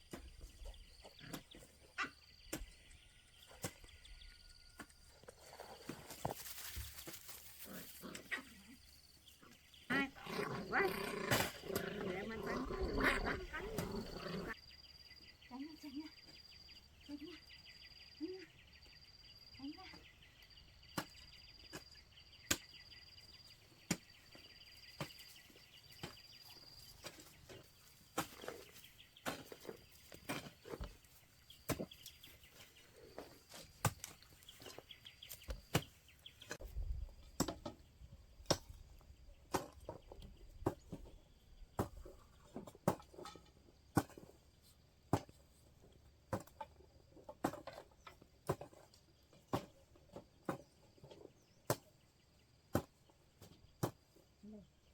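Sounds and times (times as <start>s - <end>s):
insects chirping: 2.0s - 37.1s.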